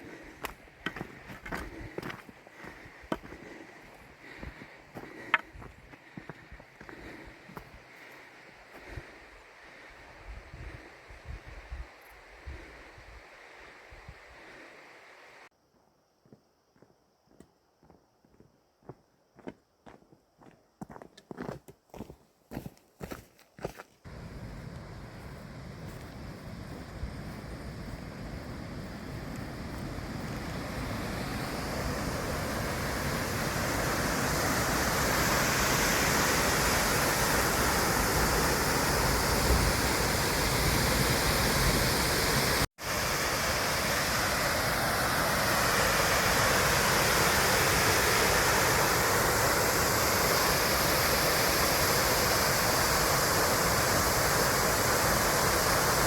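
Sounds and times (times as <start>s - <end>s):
waterfall rushing: 28.2s - 56.0s.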